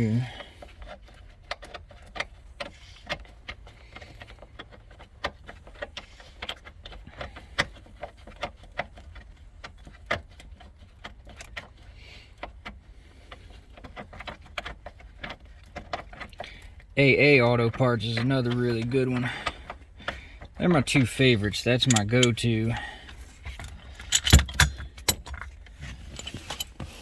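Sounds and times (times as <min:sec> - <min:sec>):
seatbelt latch clinking: 0:21.8 - 0:22.6, 0:23.5 - 0:26.8
socket wrench clicks: 0:24.0 - 0:25.3.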